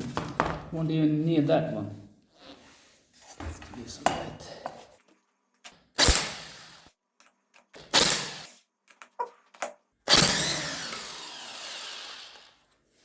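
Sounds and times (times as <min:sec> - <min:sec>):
electric impact wrench bursts: 0:06.0 - 0:06.9, 0:07.8 - 0:08.6, 0:10.1 - 0:12.6.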